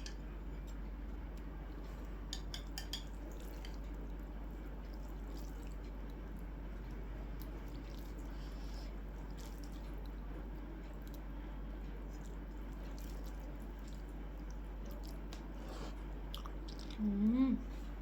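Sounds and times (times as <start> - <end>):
steady low hum: 0.0 - 18.0
wet squishing of chewing: 3.1 - 17.2.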